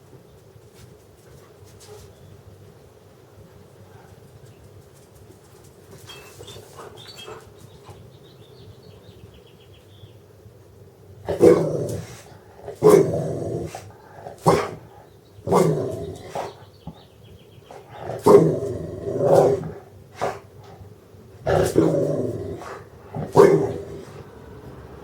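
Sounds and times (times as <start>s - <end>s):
dog barking: 11.3s - 11.8s, 12.7s - 13.8s, 14.4s - 14.9s, 15.5s - 16.6s, 18.0s - 18.7s, 21.5s - 24.2s.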